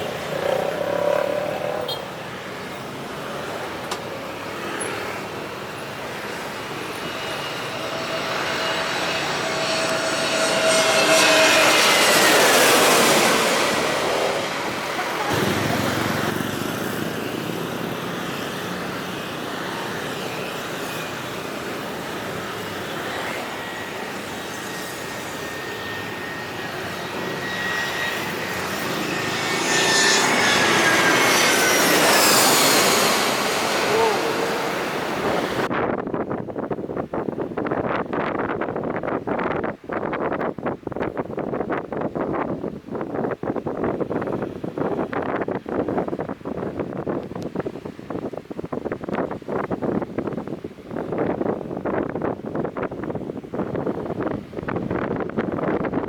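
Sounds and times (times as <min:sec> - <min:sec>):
jet airliner passing overhead: 0:00.0 - 0:35.7.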